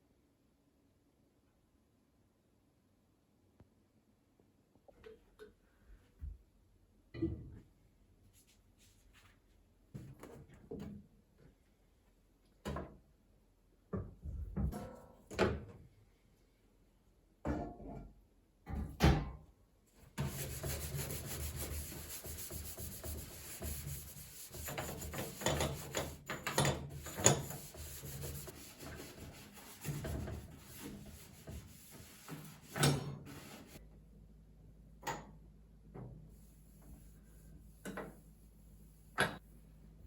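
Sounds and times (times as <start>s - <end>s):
rubbing and scrubbing: 20.2s - 33.8s.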